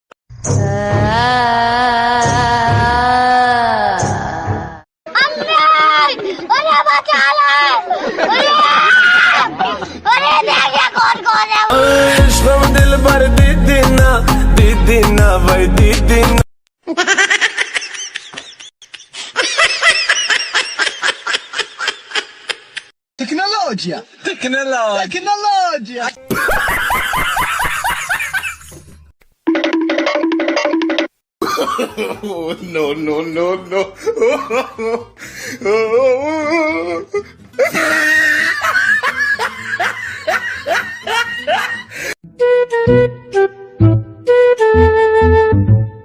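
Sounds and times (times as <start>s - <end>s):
music: 11.7s - 16.4s, 42.2s - 46.0s
high-pitched giggling laughter: 16.8s - 22.9s, 37.6s - 41.9s.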